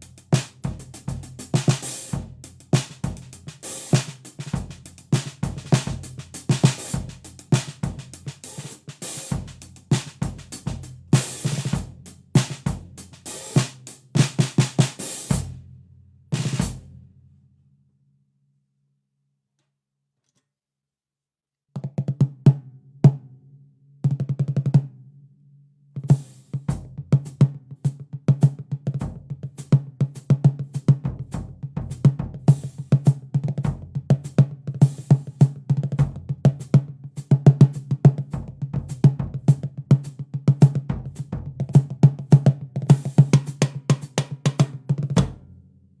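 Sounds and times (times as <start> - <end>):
drum kit groove: 0.0 - 15.7, 16.4 - 17.0, 26.1 - 27.5, 28.4 - 45.5
snare drum hits: 2.8 - 11.8, 12.4 - 12.7, 13.3 - 15.4, 42.9 - 45.5.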